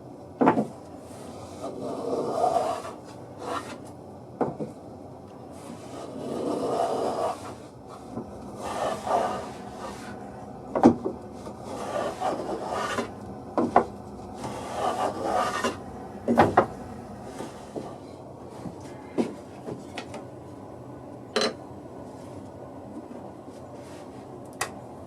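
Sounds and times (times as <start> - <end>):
abrasive rubbing on wood: 5.6 - 17.9
wooden knocks: 10.7 - 11.2, 13.6 - 14.0, 16.2 - 16.8.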